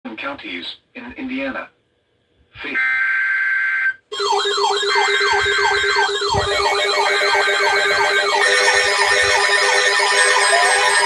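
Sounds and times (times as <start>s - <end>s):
electronic sirens wailing: 2.8s - 11.0s
steady electronic tone: 4.8s - 11.0s.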